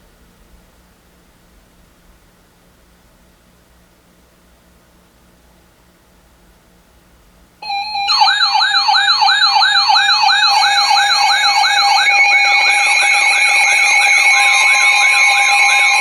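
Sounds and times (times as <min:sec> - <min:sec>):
emergency alert alarm tones: 0:07.6 - 0:16.0
siren-like yelp: 0:07.6 - 0:16.0.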